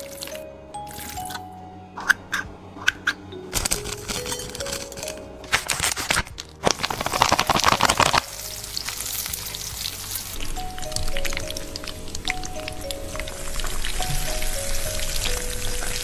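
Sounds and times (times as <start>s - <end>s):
soft background music: 0.0s - 16.0s
food sizzling in hot oil: 6.7s - 13.2s.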